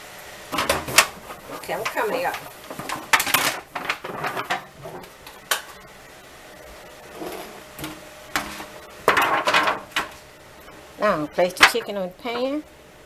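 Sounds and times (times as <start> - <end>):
pans and dishes clicking and knocking: 0.5 - 5.8, 7.1 - 10.2, 11.5 - 12.5.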